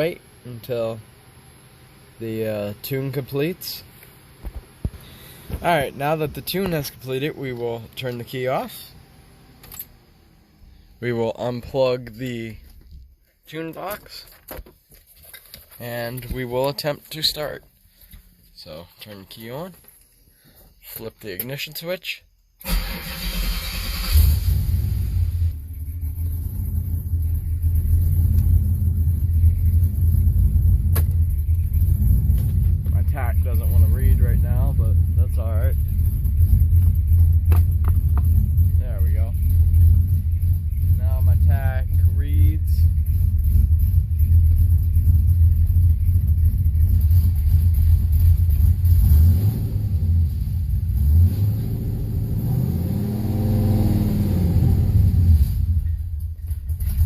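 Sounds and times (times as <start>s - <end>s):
car engine idling: 0.0s - 13.3s, 22.7s - 51.2s, 54.4s - 57.0s.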